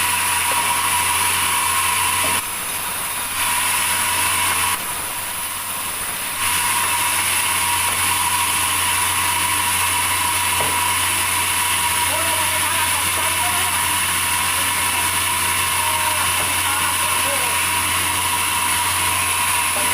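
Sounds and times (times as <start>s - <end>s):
sawmill machinery running: 0.0s - 19.9s.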